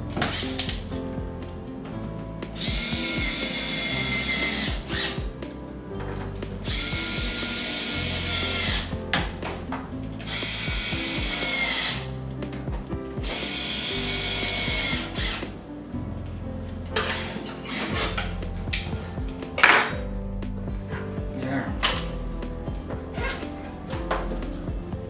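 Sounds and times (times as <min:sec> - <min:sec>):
background music: 0:00.0 - 0:25.0.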